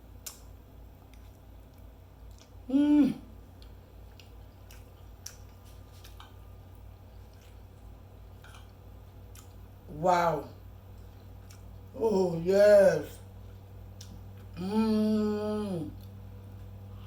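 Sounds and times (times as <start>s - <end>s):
person chewing food: 0.1s - 9.9s, 10.6s - 12.0s, 13.2s - 14.6s
person humming mm: 2.7s - 3.3s, 14.6s - 16.0s.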